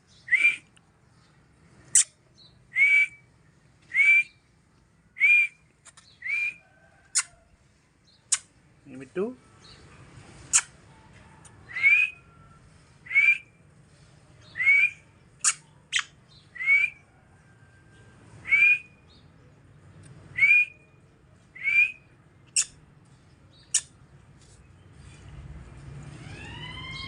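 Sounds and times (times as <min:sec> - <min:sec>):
parrot whistling: 0:11.7 - 0:12.2.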